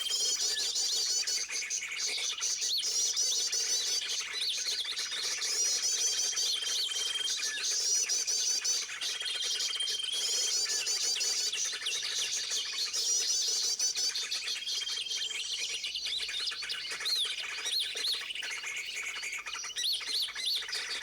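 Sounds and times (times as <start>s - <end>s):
birds chirping: 0.0s - 0.6s.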